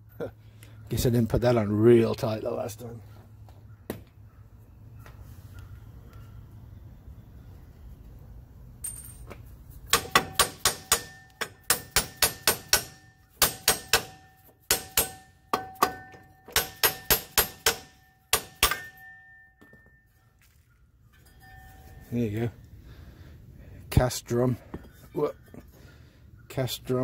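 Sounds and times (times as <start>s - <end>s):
hammer striking metal brake drum: 9.9s - 19.8s.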